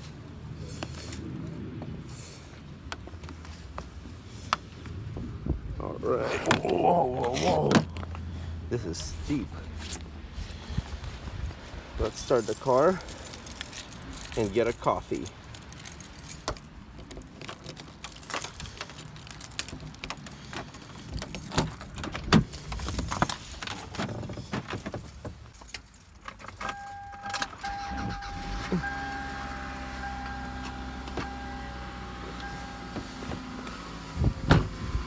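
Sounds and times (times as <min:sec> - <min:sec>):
car keys jangling: 0:11.7 - 0:33.7
car engine idling: 0:26.6 - 0:34.9
high electronic tone: 0:26.7 - 0:32.9.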